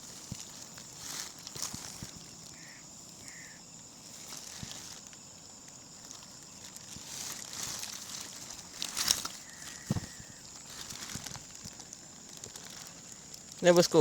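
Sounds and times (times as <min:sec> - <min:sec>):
light rustling and handling: 0:00.0 - 0:02.6, 0:04.1 - 0:13.6
steady high-pitched hum: 0:00.0 - 0:14.0
dull thuds: 0:09.8 - 0:11.4.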